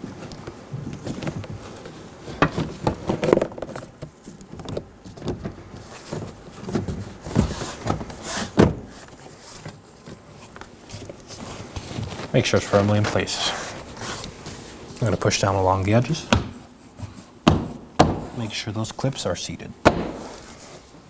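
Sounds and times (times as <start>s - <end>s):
plastic door panel knocking: 16.2s - 16.7s, 17.4s - 18.4s, 19.8s - 20.4s.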